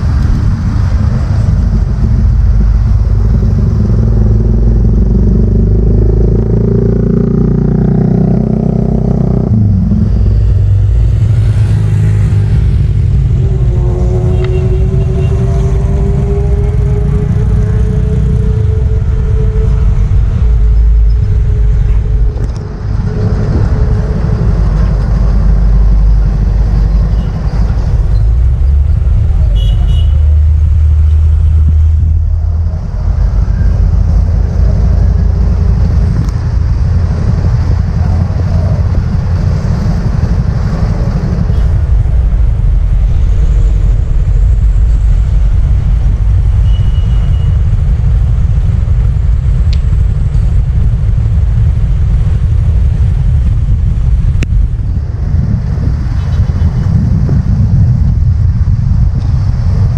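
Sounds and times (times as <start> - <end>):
road traffic rumble: 0.0 - 59.9
horn-like tone: 12.9 - 24.4, 46.6 - 47.6.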